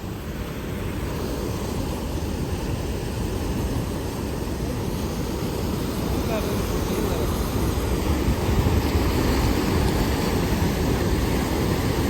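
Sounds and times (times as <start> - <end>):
waterfall crashing: 3.2 - 12.0.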